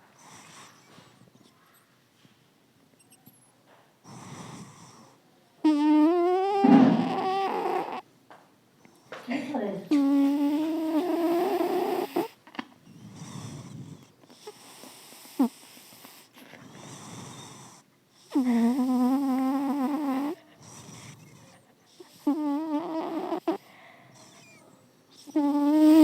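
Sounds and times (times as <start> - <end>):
cat snoring: 0.0 - 1.5, 4.0 - 8.1, 9.9 - 26.0
breathy breaths: 0.0 - 2.4, 12.0 - 18.9, 20.0 - 22.4, 23.5 - 25.6.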